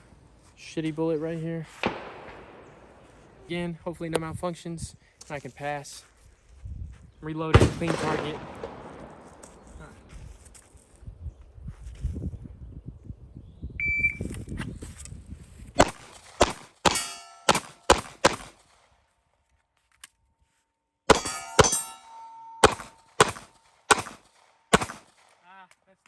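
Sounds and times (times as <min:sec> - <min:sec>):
pistol shots: 0:01.8 - 0:03.0, 0:07.6 - 0:09.6, 0:15.8 - 0:18.8, 0:21.1 - 0:25.4
shot timer beep: 0:13.8 - 0:14.3
metallic ringing: 0:16.9 - 0:18.0, 0:21.1 - 0:24.1.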